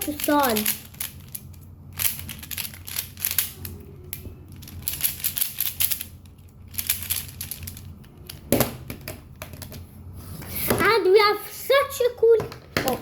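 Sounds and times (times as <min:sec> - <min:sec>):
plastic puzzle clicking as twisted: 0:00.0 - 0:03.8, 0:04.6 - 0:06.1.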